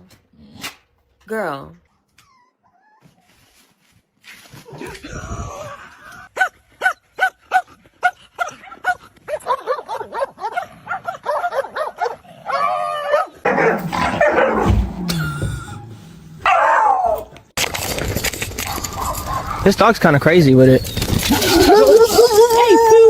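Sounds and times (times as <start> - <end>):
dog yipping and whining: 2.0 - 3.4, 11.2 - 17.4, 18.6 - 19.6, 20.8 - 23.0.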